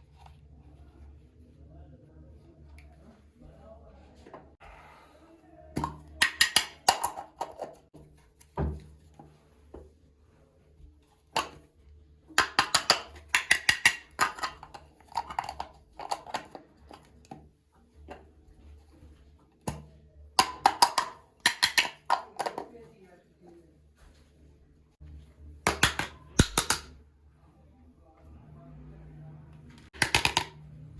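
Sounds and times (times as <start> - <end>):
plastic toy pieces clicking: 6.2 - 7.6, 12.4 - 16.5, 20.4 - 22.3, 25.7 - 26.9, 30.0 - 30.6.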